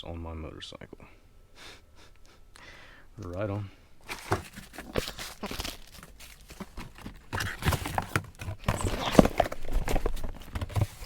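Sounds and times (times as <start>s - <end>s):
packaging and papers handled: 3.3s - 11.0s.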